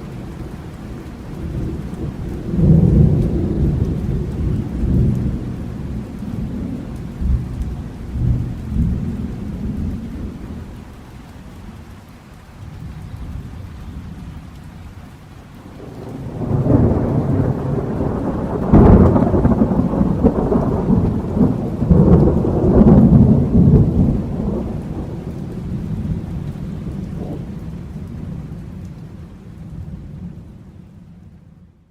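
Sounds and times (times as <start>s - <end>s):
thunder crack and rumbles: 0.0s - 10.8s, 15.7s - 30.4s.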